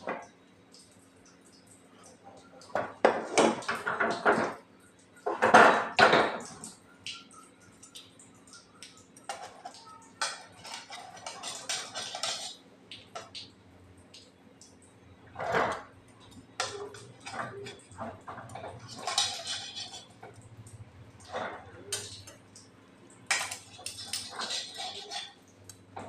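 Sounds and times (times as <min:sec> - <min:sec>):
kitchen utensils clinking: 0:09.0 - 0:13.6, 0:15.2 - 0:22.6, 0:23.2 - 0:26.0.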